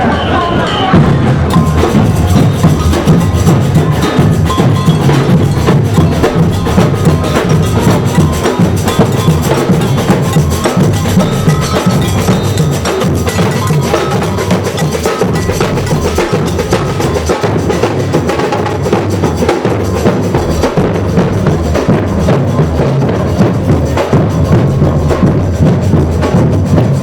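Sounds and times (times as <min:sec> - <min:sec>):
drum band playing: 0:00.0 - 0:27.0
sharp clacking percussion: 0:00.0 - 0:27.0.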